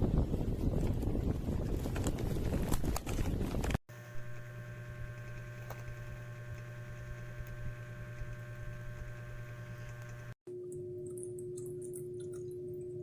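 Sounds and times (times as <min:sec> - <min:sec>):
low electrical hum: 0:03.9 - 0:13.0.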